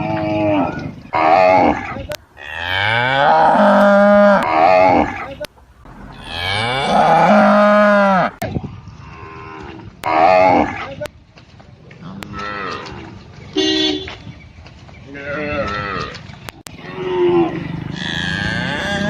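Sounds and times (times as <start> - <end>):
cow mooing: 0.0 - 5.3, 5.9 - 8.4, 15.1 - 16.2, 16.8 - 19.0.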